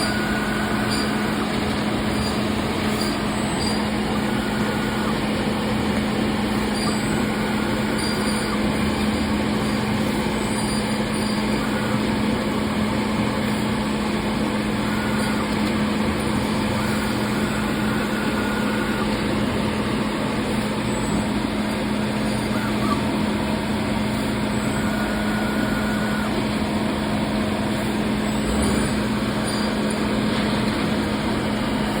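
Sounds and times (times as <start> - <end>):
brief higher whines: 0.0 - 5.3, 6.5 - 8.8, 14.8 - 15.6, 24.1 - 26.5, 27.7 - 31.6
cnc router running: 0.0 - 32.0.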